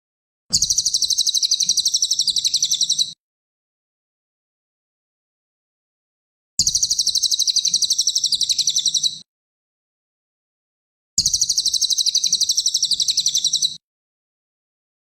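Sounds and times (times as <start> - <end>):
songbird rapid high chirps: 0.6 - 3.2, 6.6 - 9.2, 11.2 - 13.8.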